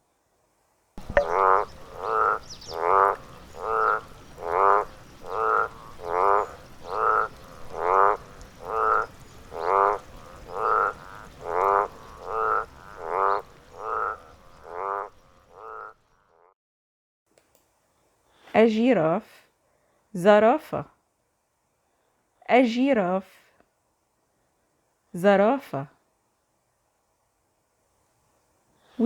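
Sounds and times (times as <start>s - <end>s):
frog croaking: 1.0s - 16.6s.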